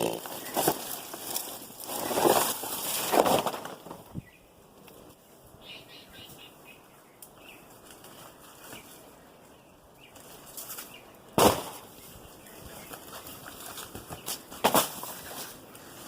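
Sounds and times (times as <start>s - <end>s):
dry leaves crackling: 0.0s - 4.1s, 10.0s - 16.0s
heavy thump of dropped plant: 11.4s - 11.8s.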